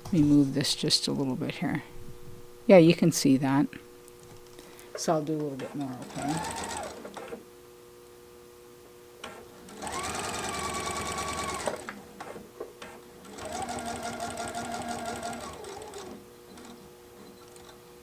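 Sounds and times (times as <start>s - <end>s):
sewing machine stitching: 5.6s - 7.4s, 9.2s - 16.8s.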